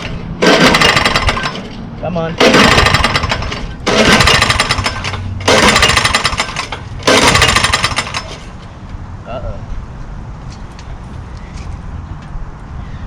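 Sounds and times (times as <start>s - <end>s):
recoil starter pulls: 0.0s - 1.8s, 2.4s - 8.5s
mower engine rattling over: 0.0s - 8.6s.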